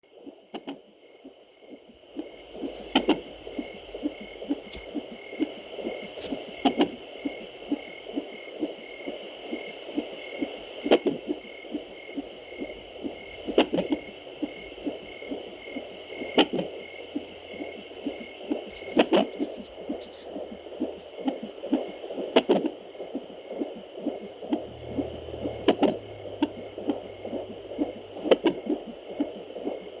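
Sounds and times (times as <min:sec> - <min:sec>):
fetal heartbeat whooshing pulse: 0:09.5 - 0:17.9, 0:23.0 - 0:30.0.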